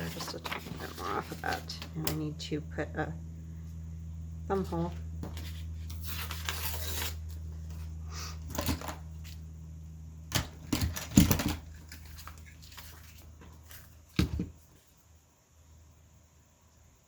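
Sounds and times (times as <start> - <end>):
paper rustling and crinkling: 0.0 - 1.9, 4.6 - 7.9, 10.8 - 14.9.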